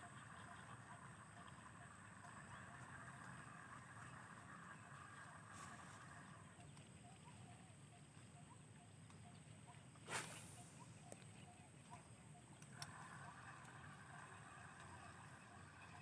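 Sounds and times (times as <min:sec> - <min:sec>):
faint high-pitched hiss: 0:10.0 - 0:11.4.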